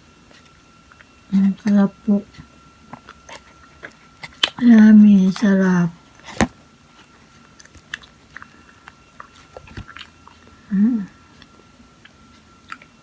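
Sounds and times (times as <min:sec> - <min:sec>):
wet chewing smacks: 0:00.2 - 0:13.0
person humming mm: 0:10.6 - 0:11.2.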